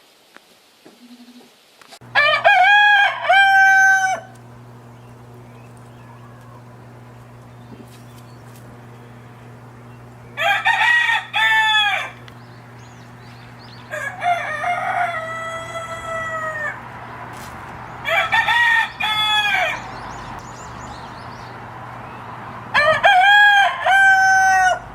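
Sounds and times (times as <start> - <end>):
steady low hum: 2.0 - 24.9
rooster crowing: 2.1 - 4.4, 10.3 - 12.3, 13.5 - 17.3, 18.0 - 20.1, 22.6 - 24.9.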